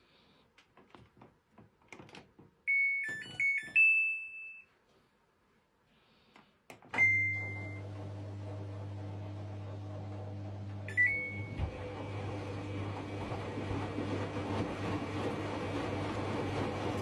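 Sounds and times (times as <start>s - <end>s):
washing machine humming: 6.8s - 17.0s.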